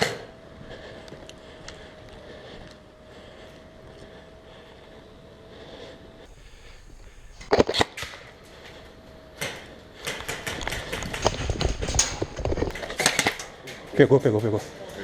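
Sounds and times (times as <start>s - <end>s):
airsoft guns firing: 6.3s - 7.9s, 10.1s - 13.5s
clatter: 10.1s - 13.5s.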